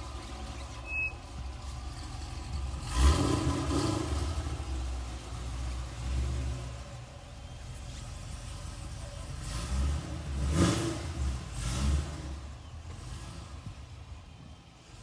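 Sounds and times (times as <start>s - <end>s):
car engine revving: 0.0s - 14.0s
high beep: 0.8s - 1.1s.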